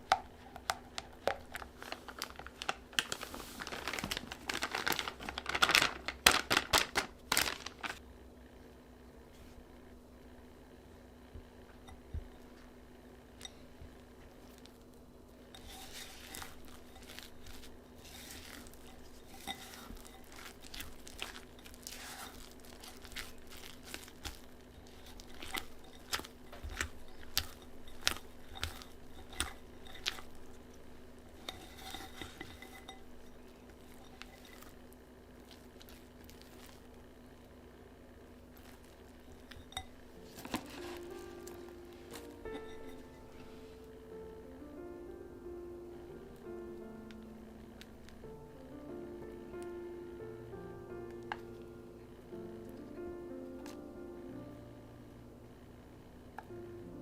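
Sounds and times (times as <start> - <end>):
steady low hum: 0.0 - 57.0
utensils clinking against a bowl: 15.5 - 30.7, 31.4 - 34.8, 38.6 - 43.3.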